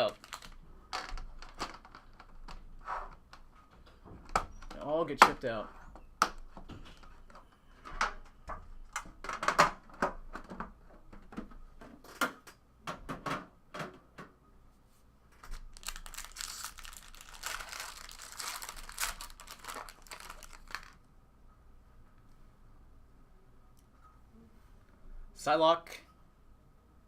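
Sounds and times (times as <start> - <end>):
wrapper crinkling and tearing: 0.0 - 2.3, 15.4 - 21.0.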